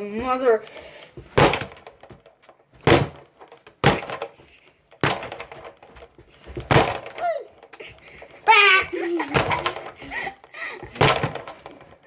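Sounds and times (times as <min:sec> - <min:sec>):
fists punching speed bag: 0:02.8 - 0:04.3.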